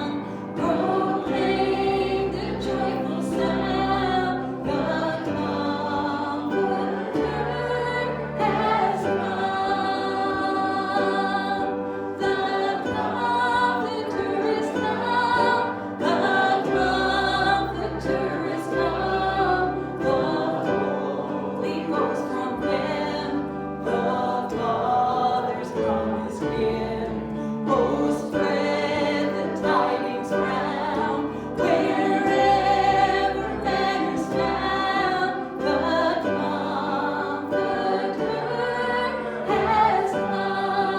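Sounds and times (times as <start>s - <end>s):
group singing worship song: 0.0s - 40.9s.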